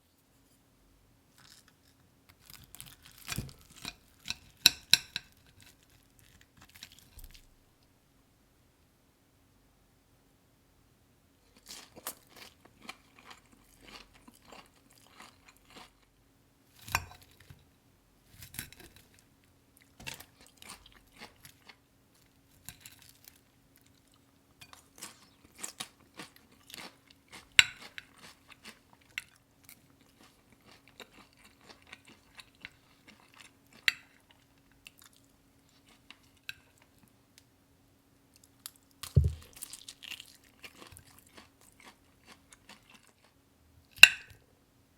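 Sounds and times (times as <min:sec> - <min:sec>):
crunchy food chewing: 0:01.3 - 0:07.5, 0:11.5 - 0:16.1, 0:19.8 - 0:37.1, 0:38.4 - 0:43.4.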